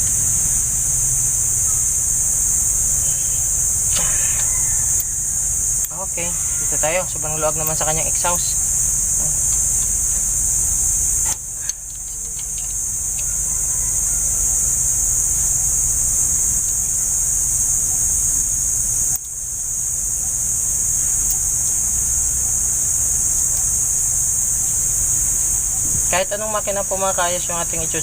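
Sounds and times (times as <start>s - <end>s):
low hum: 0.0s - 16.6s
high-pitched insect chorus: 0.0s - 28.0s.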